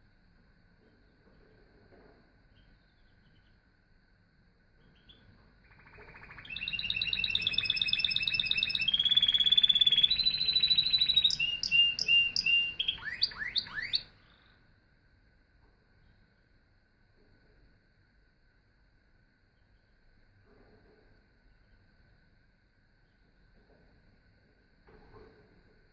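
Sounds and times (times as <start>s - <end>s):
canary singing trills: 4.8s - 14.5s.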